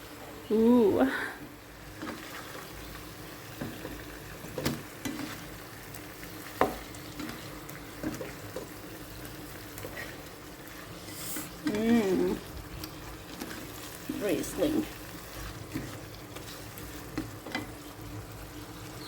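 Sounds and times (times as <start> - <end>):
food sizzling in a wok: 0.0 - 19.0
spatula scraping a pan: 1.9 - 2.8, 3.6 - 5.6, 9.8 - 12.3, 12.9 - 17.8.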